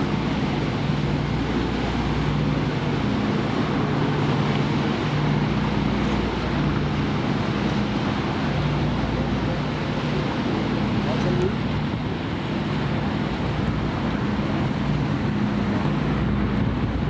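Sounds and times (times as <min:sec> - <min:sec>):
marine engine humming: 0:00.0 - 0:17.0
wind noise: 0:11.5 - 0:17.0.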